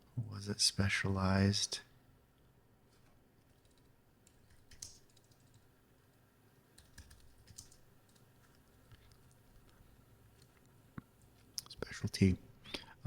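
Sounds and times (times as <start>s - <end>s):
faint keyboard typing: 2.9s - 11.9s.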